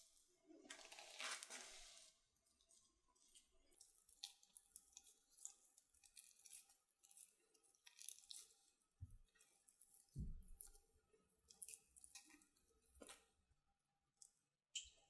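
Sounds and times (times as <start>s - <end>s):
food clicking and crackling: 3.3s - 13.3s.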